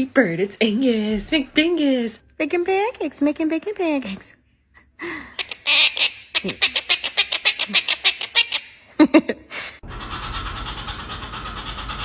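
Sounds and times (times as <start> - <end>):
parrot calling: 5.4 - 8.9.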